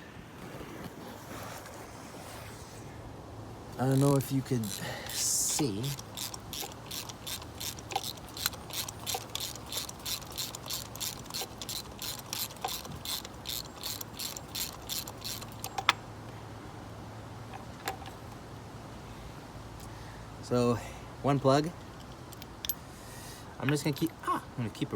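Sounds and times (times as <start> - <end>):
sharp loud ratchet click: 3.8 - 16.0
socket ratchet clicking: 3.8 - 16.0.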